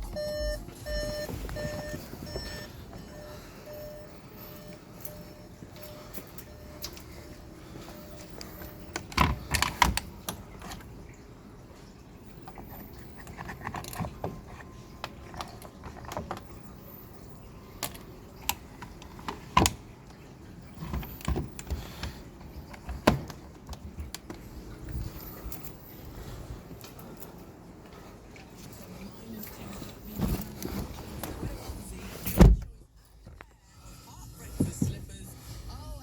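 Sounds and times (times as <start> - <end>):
handling clicks and rattles: 12.3 - 16.7.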